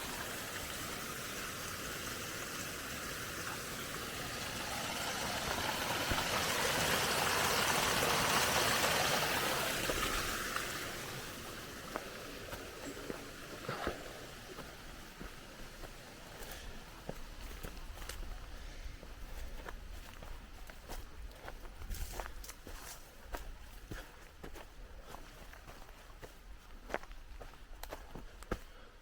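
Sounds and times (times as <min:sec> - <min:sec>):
stream water rushing: 0:00.0 - 0:18.2.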